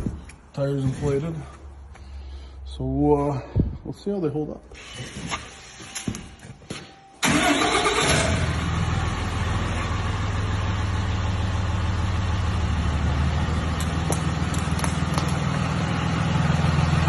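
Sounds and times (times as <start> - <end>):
pickup engine starting and idling: 7.2 - 17.0.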